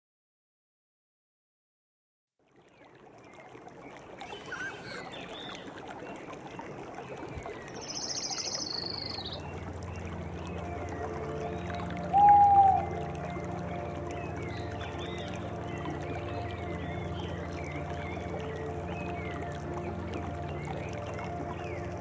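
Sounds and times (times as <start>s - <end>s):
running water: 2.5s - 22.0s
birds chirping: 3.3s - 22.0s
keyboard drone: 9.3s - 22.0s.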